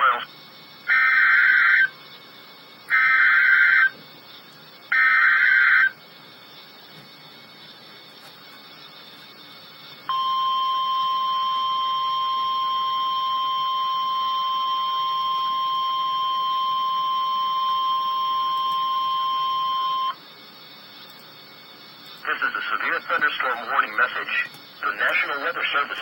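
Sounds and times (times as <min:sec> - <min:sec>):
faint radio hiss: 0:00.0 - 0:10.3, 0:20.0 - 0:26.0
steady alarm tone: 0:00.0 - 0:26.0.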